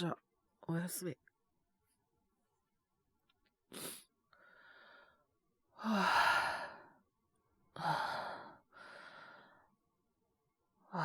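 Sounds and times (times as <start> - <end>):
person breathing and sighing: 5.8 - 6.9, 7.8 - 9.6.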